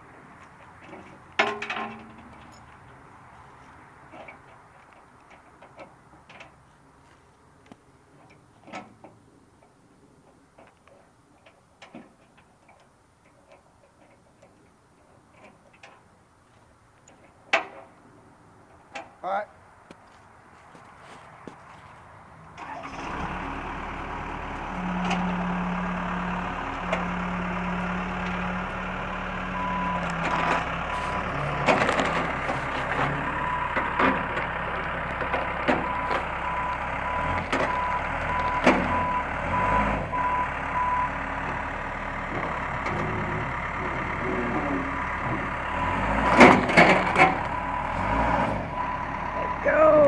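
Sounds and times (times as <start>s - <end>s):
backhoe engine running: 0.0s - 6.9s, 20.8s - 50.0s
knocks and clanks: 0.8s - 2.8s, 24.5s - 39.2s, 45.0s - 48.2s
reversing alarm beeping: 24.4s - 34.4s, 35.8s - 41.2s, 47.0s - 50.0s.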